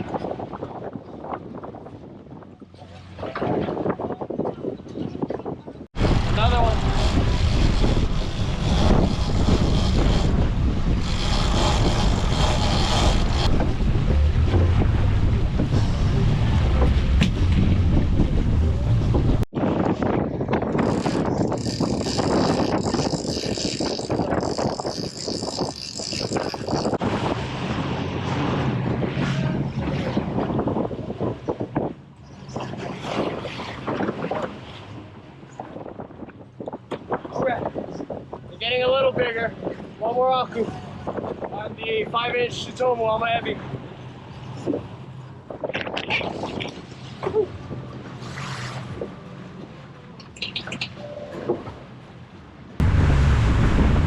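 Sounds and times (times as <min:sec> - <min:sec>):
wind buffeting microphone: 0:00.0 - 0:49.8, 0:52.6 - 0:54.0
sea: 0:00.0 - 0:54.0
boat engines running: 0:06.0 - 0:19.4, 0:20.5 - 0:32.6.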